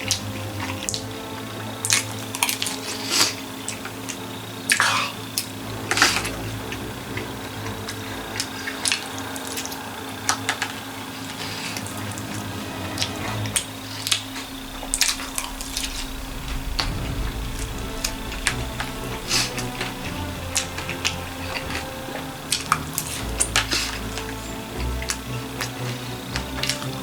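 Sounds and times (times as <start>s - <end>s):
low hum: 12.7s - 27.0s.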